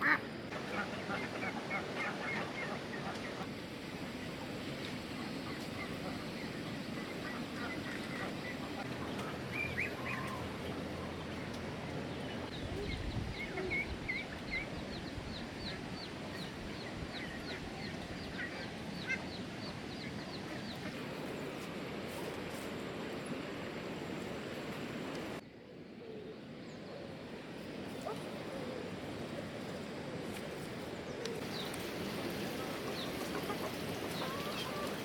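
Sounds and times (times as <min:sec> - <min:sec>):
steady hiss: 0:27.7 - 0:35.0.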